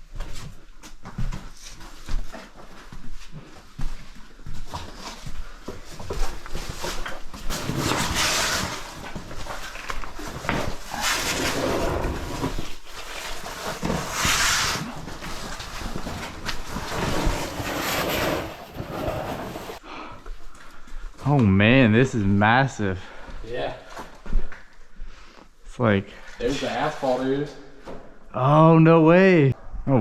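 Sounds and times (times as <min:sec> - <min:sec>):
person breathing hard: 0:19.8 - 0:21.2.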